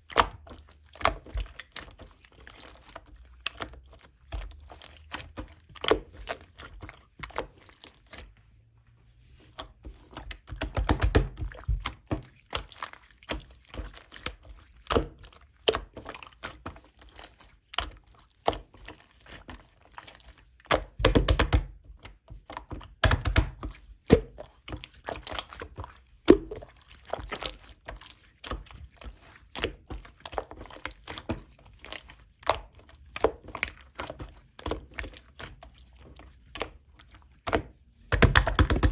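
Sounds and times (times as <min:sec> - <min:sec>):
slime squelching: 0:00.0 - 0:38.9.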